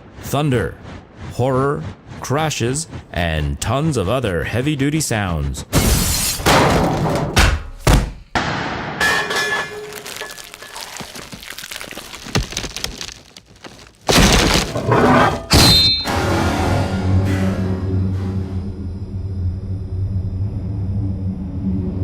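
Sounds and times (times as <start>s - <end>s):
debris breaking: 9.0s - 16.3s
hit ringing like metal: 15.5s - 16.6s.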